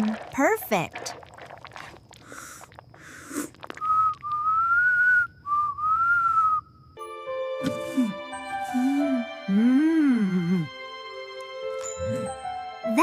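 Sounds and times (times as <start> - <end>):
person whistling a tune: 3.8 - 6.6
music with sustained tones: 7.0 - 13.0.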